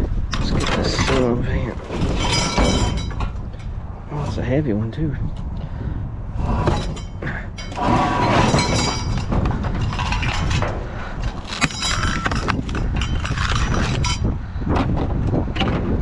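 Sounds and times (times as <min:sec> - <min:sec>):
steady low rumble: 0:00.0 - 0:16.0
glass clinking and rattling: 0:01.9 - 0:03.7, 0:06.6 - 0:14.3.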